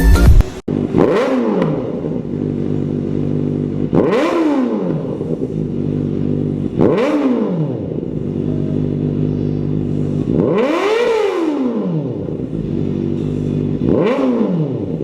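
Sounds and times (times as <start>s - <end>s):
motorcycle engine idling and revving: 0.0s - 15.0s.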